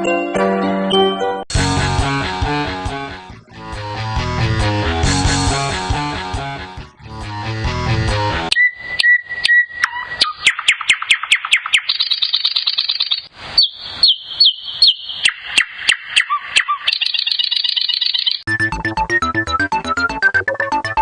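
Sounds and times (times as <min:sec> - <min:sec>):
bird-like chirping ringtone: 0:08.5 - 0:18.5.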